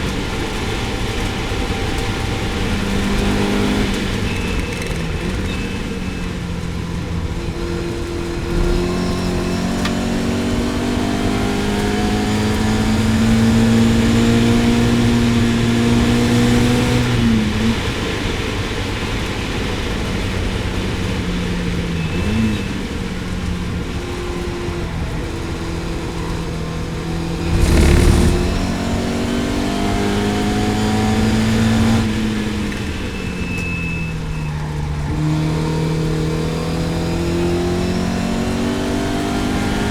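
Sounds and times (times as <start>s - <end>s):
race car engine accelerating: 0.0s - 18.1s, 24.4s - 33.1s
loud thump: 27.4s - 29.1s.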